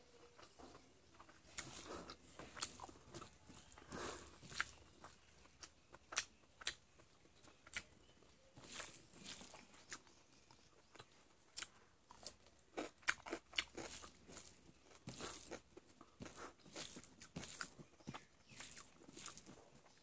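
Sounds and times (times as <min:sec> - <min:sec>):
person chewing crunchy food: 0:00.3 - 0:08.0, 0:08.6 - 0:20.0.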